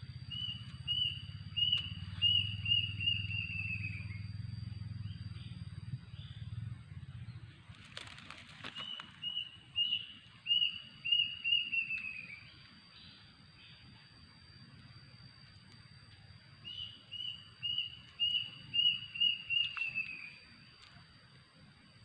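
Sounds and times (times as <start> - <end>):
thin high whine: 0.0 - 22.0
brief crackle: 7.7 - 9.3.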